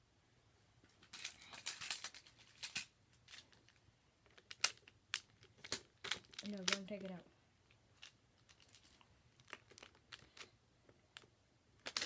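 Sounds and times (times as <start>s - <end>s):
rustling: 0.8s - 7.0s, 7.6s - 12.0s
magnet blocks clicking: 1.0s - 6.9s, 7.7s - 12.0s
magnet blocks snapping: 4.3s - 6.8s, 11.2s - 12.0s.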